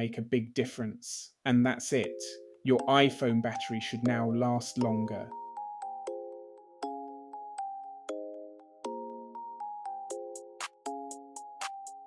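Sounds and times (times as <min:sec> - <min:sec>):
light electronic music: 0:01.8 - 0:12.0.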